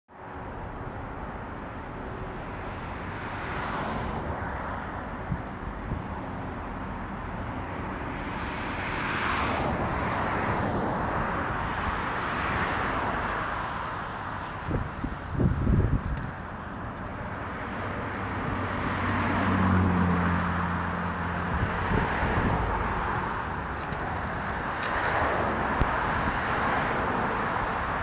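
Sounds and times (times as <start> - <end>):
vehicles passing: 0.1 - 28.0.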